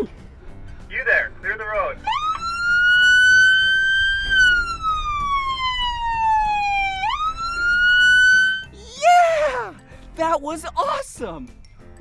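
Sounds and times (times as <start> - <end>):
police siren wailing: 2.0 - 8.7.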